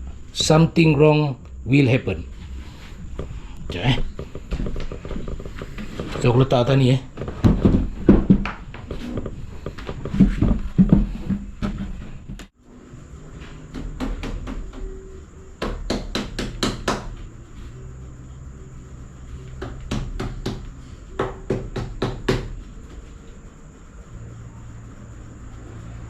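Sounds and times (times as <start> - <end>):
faint hum: 0.0 - 26.0
sharp knocks: 15.6 - 17.2, 19.6 - 22.6.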